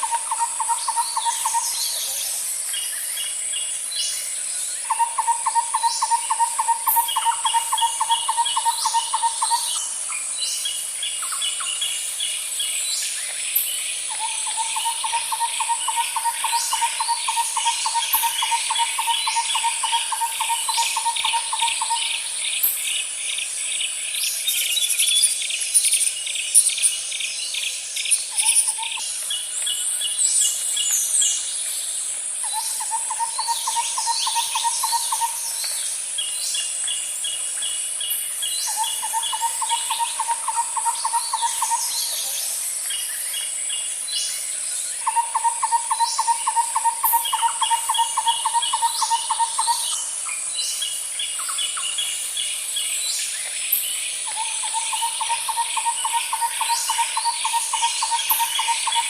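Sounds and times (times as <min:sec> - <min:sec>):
high-pitched insect drone: 0:24.2 - 0:59.0.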